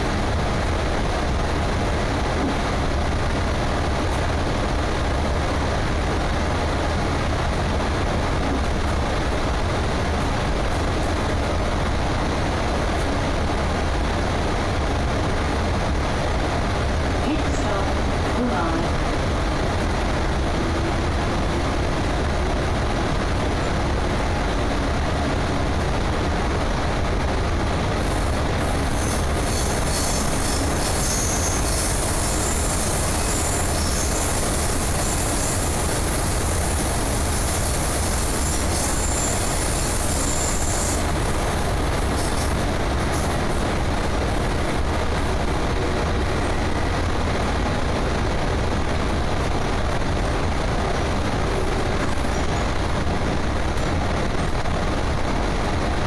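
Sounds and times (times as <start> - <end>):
train wheels rumbling on track: 0.0 - 56.0
high-pitched wheel squeal: 28.1 - 43.3.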